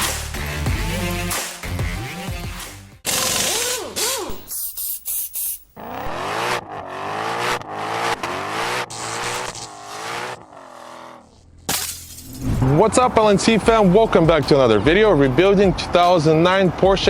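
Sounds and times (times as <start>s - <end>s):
car engine revving: 5.8s - 11.7s.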